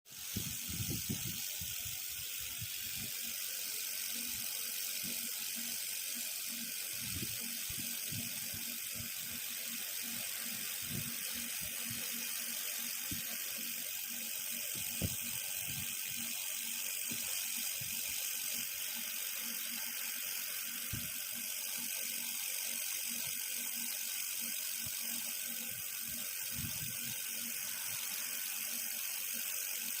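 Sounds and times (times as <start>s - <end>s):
laser welder hiss: 0.1s - 30.0s.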